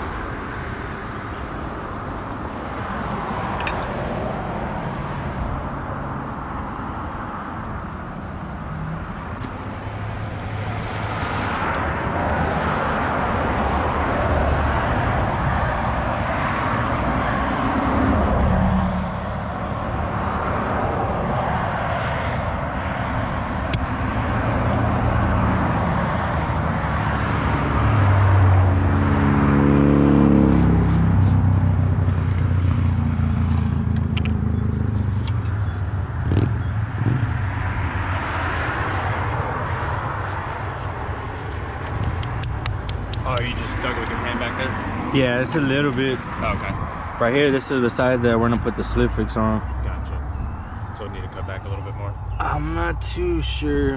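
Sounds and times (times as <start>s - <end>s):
traffic passing by: 0.0s - 53.9s
vehicle engine passing: 22.9s - 53.9s.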